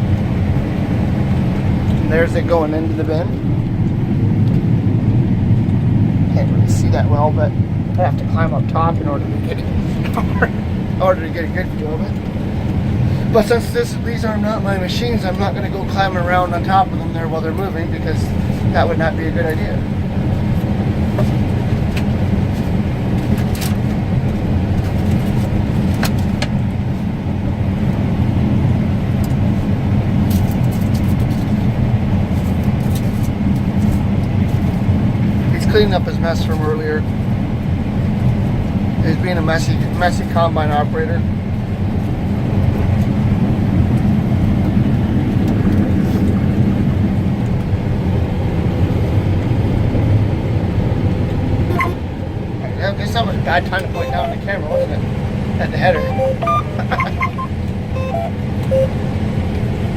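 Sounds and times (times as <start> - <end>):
harvester engine droning: 0.0 - 29.5, 51.2 - 59.9.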